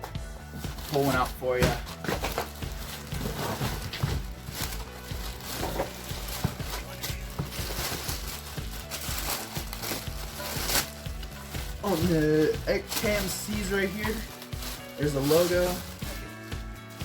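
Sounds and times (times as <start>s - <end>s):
background music with low beat: 0.0s - 17.0s
packaging scraping rustles: 0.6s - 17.0s.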